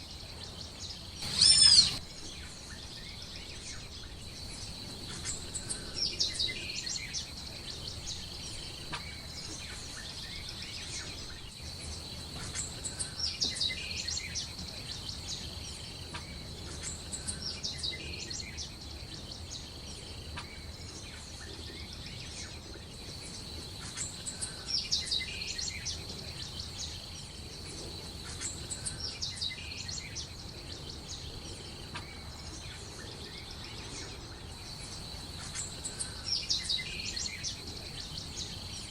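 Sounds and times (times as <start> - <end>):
birds chirping: 0.4 - 2.0
high-pitched insect drone: 1.2 - 2.0.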